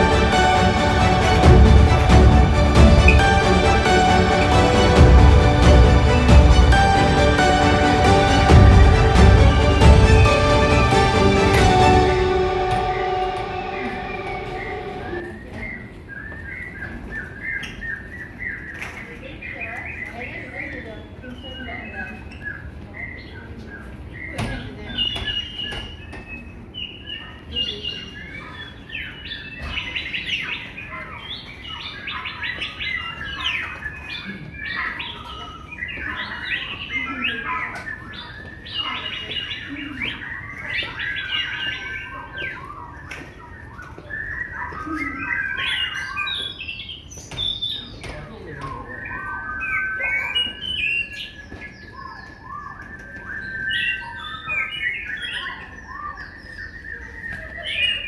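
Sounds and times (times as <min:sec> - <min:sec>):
steady whistled note: 0:00.0 - 0:15.6
birds chirping chorus: 0:14.6 - 0:58.0.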